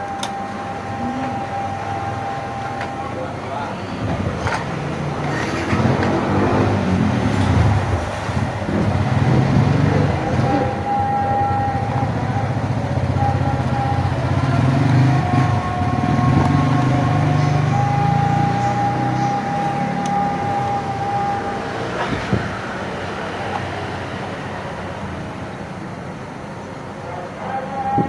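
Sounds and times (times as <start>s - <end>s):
motorcycle engine running: 4.1s - 22.6s.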